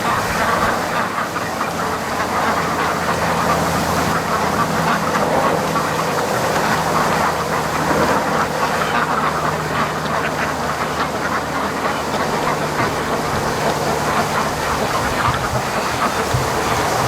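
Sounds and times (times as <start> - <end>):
ducks quacking: 0.0 - 17.0
wind on microphone: 12.2 - 17.0.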